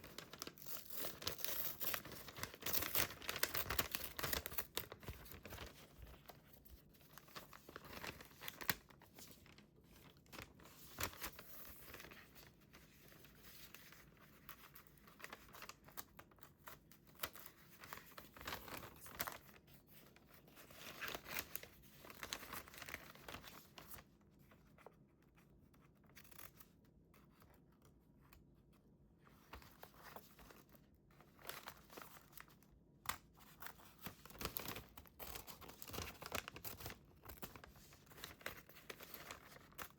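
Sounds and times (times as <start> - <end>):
paper rustling and crinkling: 0.0 - 25.0, 29.2 - 39.9.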